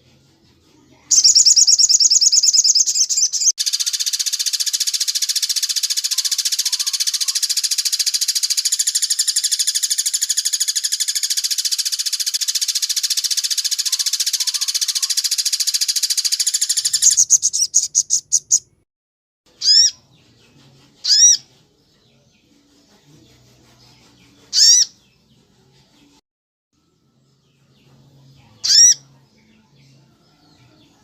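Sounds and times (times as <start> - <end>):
bird trilling: 1.1 - 18.7, 19.6 - 20.0, 21.0 - 21.4, 24.6 - 24.9, 28.6 - 29.0.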